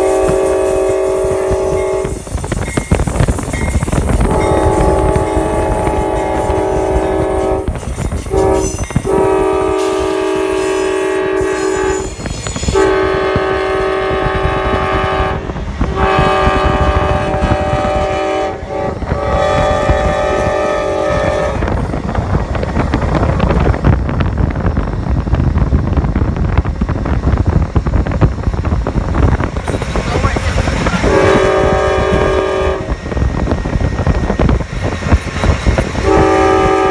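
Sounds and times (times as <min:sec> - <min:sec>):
locomotive horn blasts: 0:00.0 - 0:02.2, 0:04.2 - 0:21.8, 0:30.8 - 0:33.0, 0:36.0 - 0:36.9
train wheels clattering on rails: 0:00.0 - 0:36.9.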